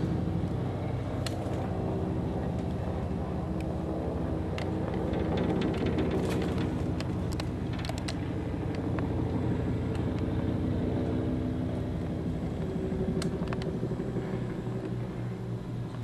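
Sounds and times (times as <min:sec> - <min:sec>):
helicopter flying overhead: 0:00.0 - 0:16.0.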